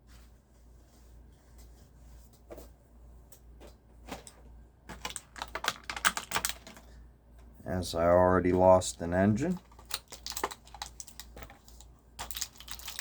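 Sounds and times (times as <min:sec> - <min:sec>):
plastic parts clicking and rattling: 0:04.2 - 0:06.9, 0:09.5 - 0:13.0.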